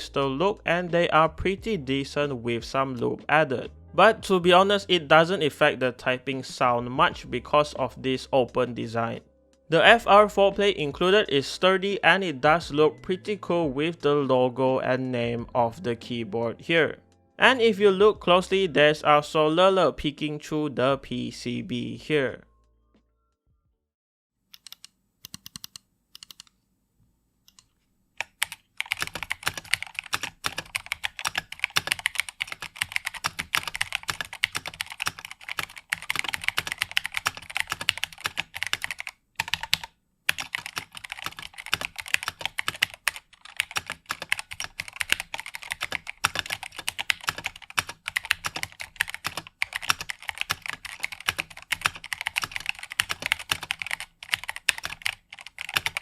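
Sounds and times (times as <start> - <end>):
mechanical keyboard typing: 24.6 - 26.5, 27.5 - 56.0.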